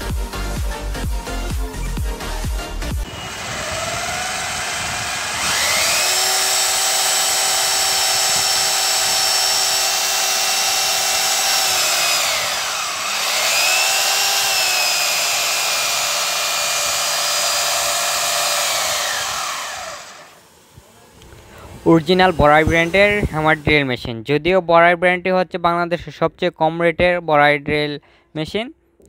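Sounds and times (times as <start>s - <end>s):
electric drill motor whine: 2.8s - 23.9s.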